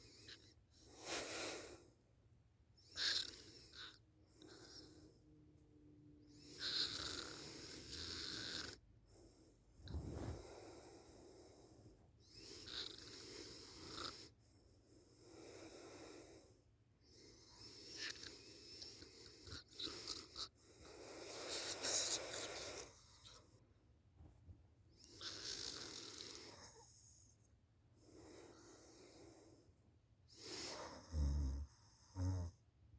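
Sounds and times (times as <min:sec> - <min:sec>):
person snoring: 0:30.7 - 0:32.6.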